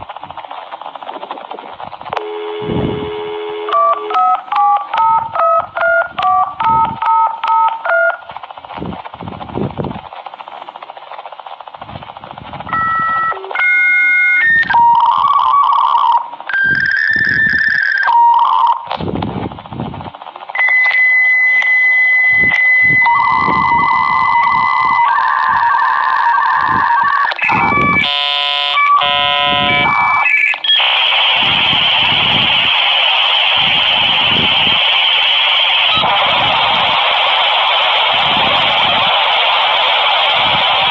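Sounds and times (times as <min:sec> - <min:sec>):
modem hiss: 0:00.0 - 0:40.9
dial-up modem tones: 0:02.2 - 0:08.3, 0:12.7 - 0:18.9, 0:20.6 - 0:31.0.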